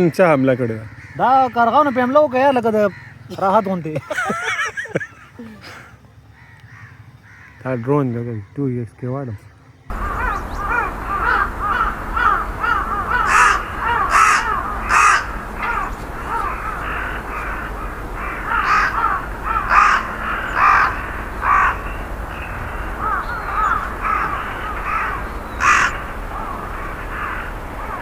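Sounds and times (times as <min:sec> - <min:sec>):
crows cawing: 0:00.0 - 0:28.0
quick short crow calls: 0:09.9 - 0:28.0.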